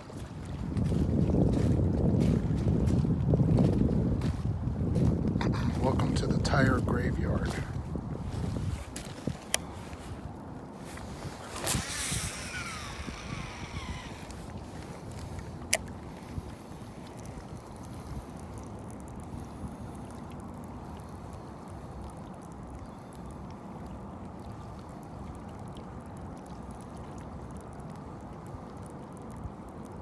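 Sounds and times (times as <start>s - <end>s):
wind noise: 0.0s - 21.9s
water noise: 0.0s - 30.0s.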